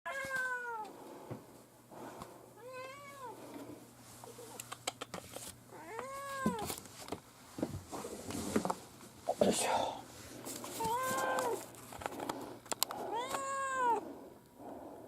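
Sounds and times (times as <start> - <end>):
cat meowing: 0.1 - 0.9, 2.6 - 3.4, 5.7 - 6.6, 10.8 - 11.6, 13.1 - 14.0.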